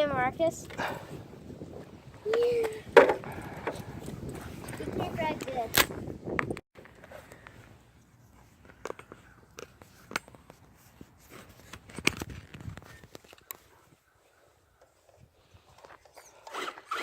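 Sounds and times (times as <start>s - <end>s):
light clicks and knocks of handling: 8.4s - 13.7s.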